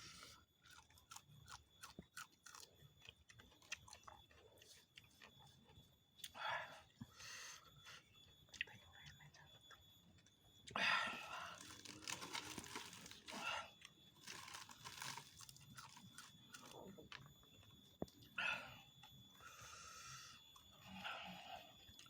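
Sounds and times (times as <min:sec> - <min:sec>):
chewing crisp raw vegetables: 0:00.0 - 0:06.4, 0:11.5 - 0:18.2.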